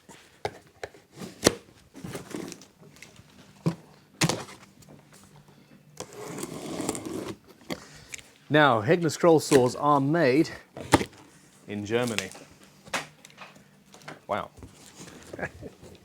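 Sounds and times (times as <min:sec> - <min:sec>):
cardboard rustling: 0:00.0 - 0:04.8, 0:06.0 - 0:07.8, 0:09.4 - 0:12.5, 0:14.4 - 0:16.0.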